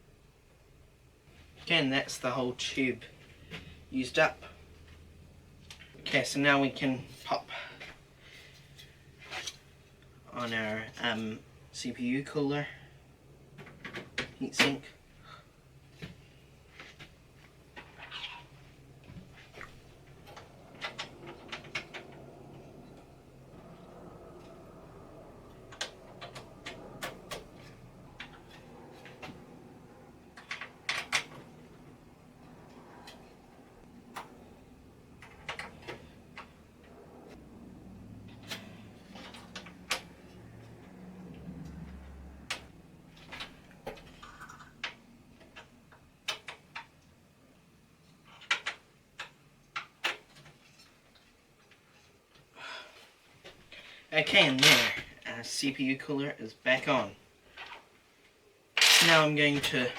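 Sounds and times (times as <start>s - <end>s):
heatsink parts clicking and knocking: 25.4s - 36.9s, 42.4s - 47.3s, 48.3s - 52.5s.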